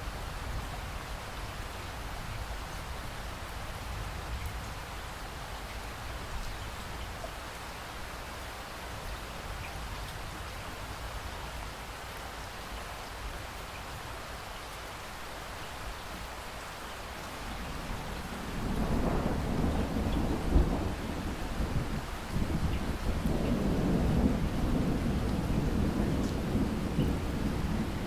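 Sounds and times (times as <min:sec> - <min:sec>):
steady rain falling: 0:00.0 - 0:28.0
low rumble of thunder: 0:17.4 - 0:28.0.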